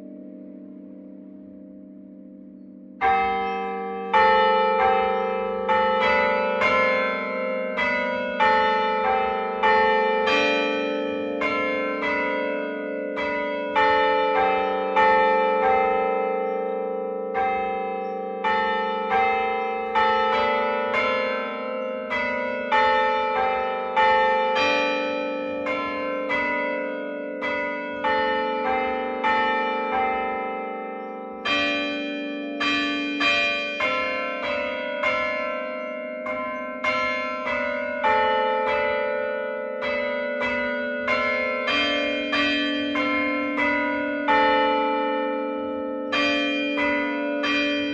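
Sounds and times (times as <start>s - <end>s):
church bells ringing: 0.0s - 47.9s.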